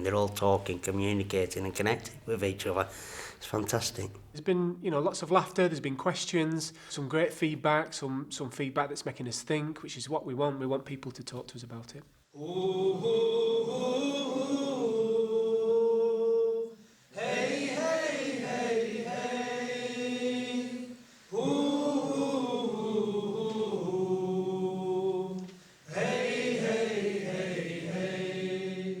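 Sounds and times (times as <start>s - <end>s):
group of voices chanting: 12.4s - 29.0s.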